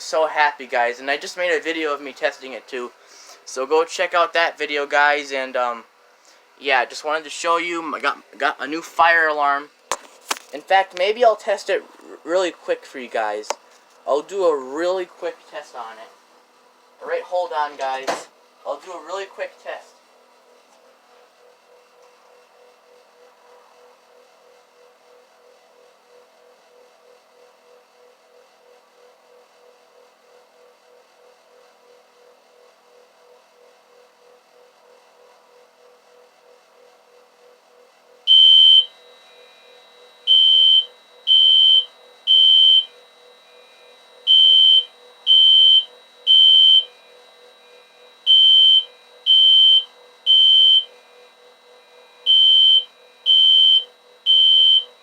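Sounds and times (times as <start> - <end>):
faint steady hum: 0.0 - 55.0
fire alarm horn beeping: 38.3 - 55.0.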